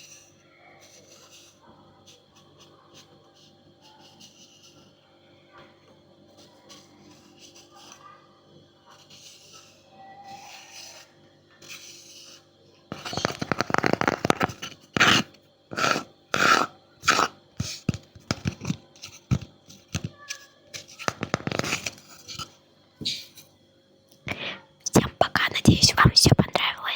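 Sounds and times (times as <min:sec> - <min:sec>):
scratching on wood: 0:09.0 - 0:20.2, 0:20.8 - 0:23.3.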